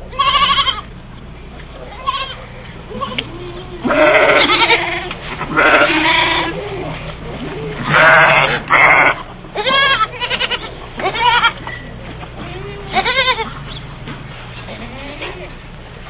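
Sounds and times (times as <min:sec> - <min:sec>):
livestock bleating: 0:00.1 - 0:00.9, 0:01.9 - 0:06.6, 0:07.8 - 0:11.6, 0:12.4 - 0:13.6, 0:14.7 - 0:15.5.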